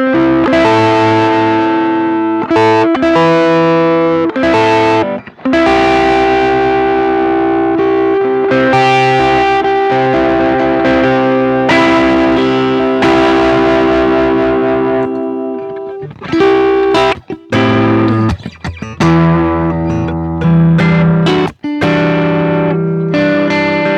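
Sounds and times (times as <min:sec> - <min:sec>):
distorted electric guitar: 0:00.0 - 0:23.9.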